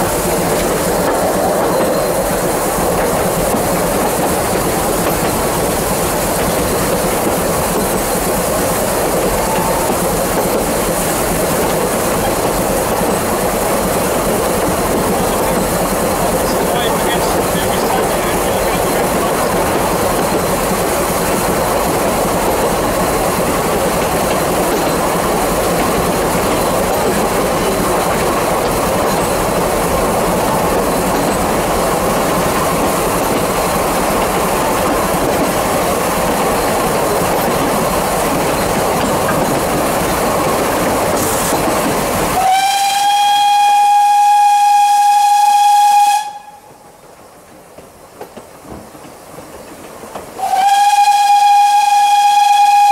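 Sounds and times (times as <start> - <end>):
train carriages rumbling and rattling: 0.0 - 52.9
steam whistle blast: 42.4 - 46.7, 50.4 - 52.9.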